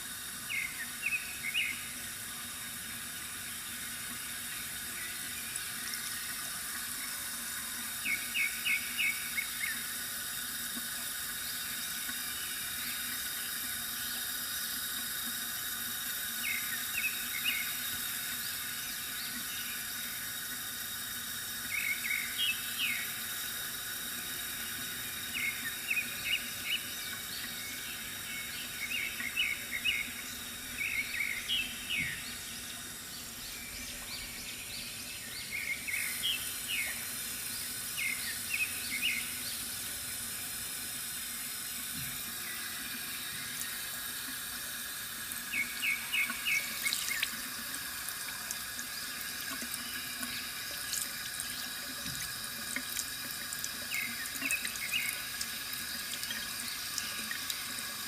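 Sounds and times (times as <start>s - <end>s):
water trickling from fountain spout: 0.0s - 58.0s
birds chirping: 25.3s - 39.9s, 45.5s - 47.4s, 53.9s - 55.4s.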